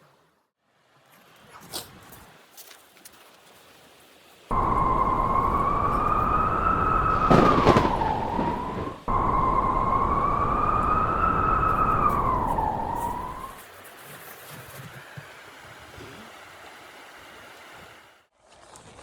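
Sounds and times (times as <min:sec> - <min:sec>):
steady rushing noise: 0:04.5 - 0:13.5.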